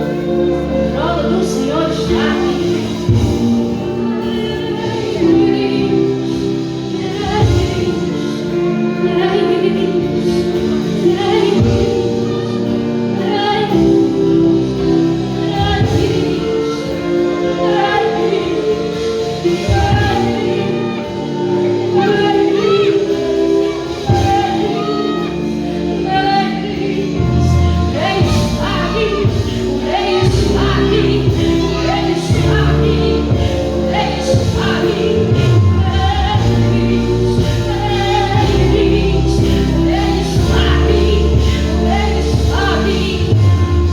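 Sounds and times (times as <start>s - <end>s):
worship singing: 0.0s - 43.9s
deep bass: 27.1s - 43.9s.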